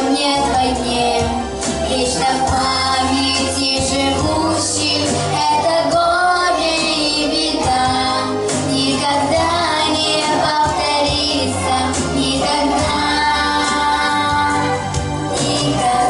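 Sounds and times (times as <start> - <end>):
instrumental accompaniment with bass: 0.0 - 16.0
girl singing: 2.0 - 14.8.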